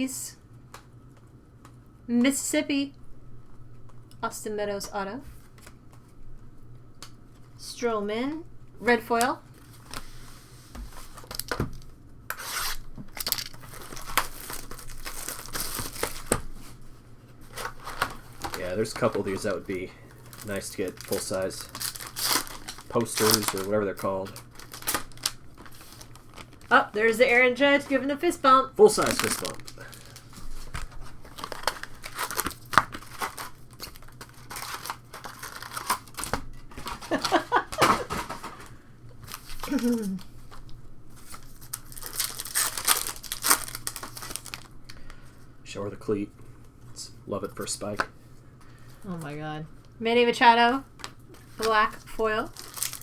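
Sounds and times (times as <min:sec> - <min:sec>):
card pack wrappers crinkling: 0:11.0 - 0:45.2, 0:50.9 - 0:53.0.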